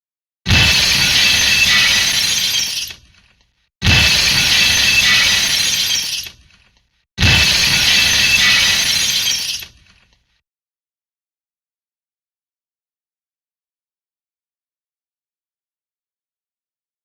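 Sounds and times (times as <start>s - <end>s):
glass shattering: 0.5s - 3.0s, 3.8s - 6.4s, 7.2s - 9.8s.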